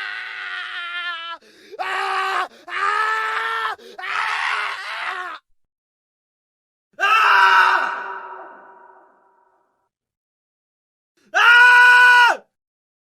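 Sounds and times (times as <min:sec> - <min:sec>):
man screaming: 0:00.0 - 0:05.4, 0:07.0 - 0:09.2, 0:11.3 - 0:12.4.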